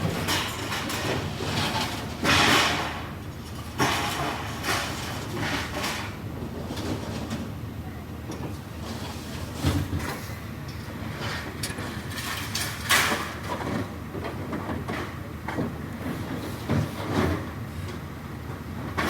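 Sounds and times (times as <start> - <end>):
scrap metal crashing: 0.0 - 6.2.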